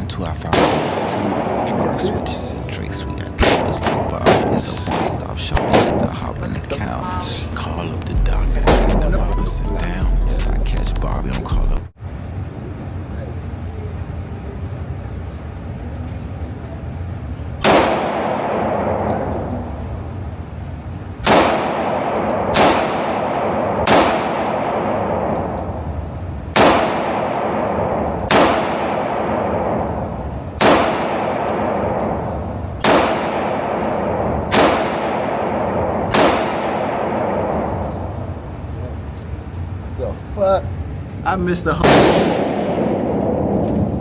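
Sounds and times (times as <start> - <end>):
gunshots echoing: 0.0 - 9.9, 17.6 - 19.8, 21.2 - 25.8, 26.5 - 38.4, 41.8 - 44.0.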